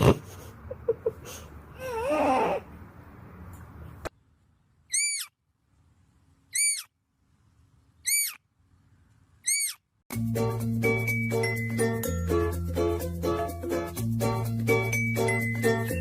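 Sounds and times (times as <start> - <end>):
music: 10.1 - 16.0.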